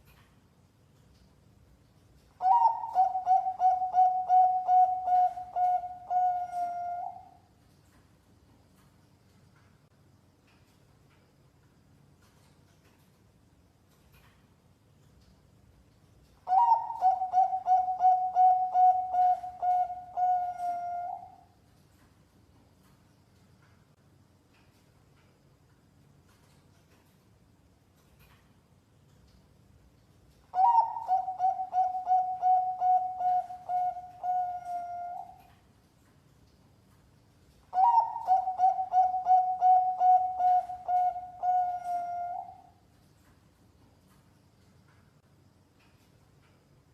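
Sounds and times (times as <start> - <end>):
dove cooing: 2.4 - 7.4, 16.5 - 21.4, 30.6 - 35.5, 37.7 - 42.7.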